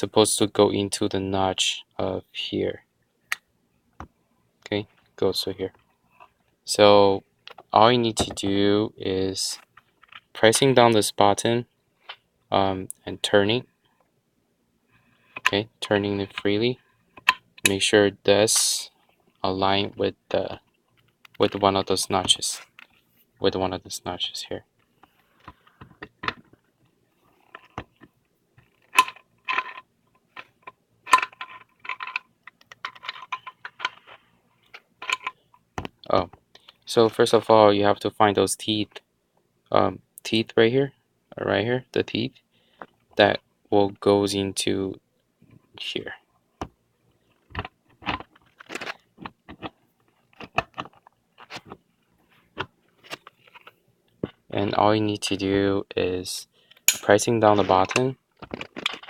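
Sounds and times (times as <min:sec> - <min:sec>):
metal parts clicking and clinking: 0:28.7 - 0:34.2, 0:56.8 - 0:57.2
metallic knocks ringing: 0:56.9 - 0:57.2.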